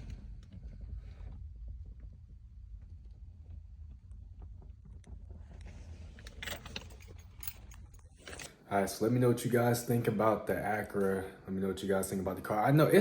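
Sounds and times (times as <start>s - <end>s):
low rumble: 0.0s - 8.4s.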